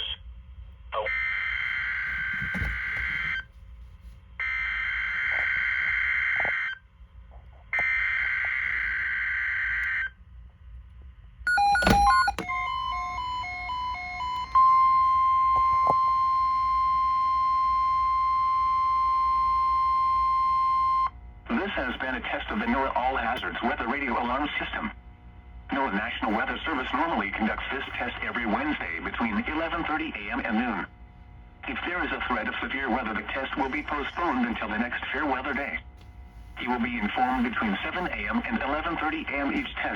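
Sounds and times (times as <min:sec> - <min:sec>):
alternating beeps: 0:11.5 - 0:21.1
steady alarm tone: 0:11.5 - 0:23.2.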